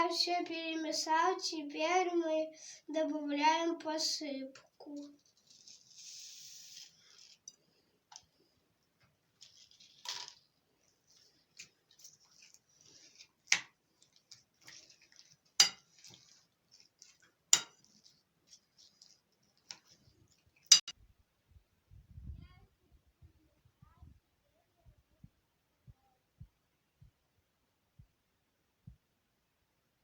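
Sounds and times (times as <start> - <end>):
utensil clinking against dish: 15.6 - 16.2, 17.5 - 17.9.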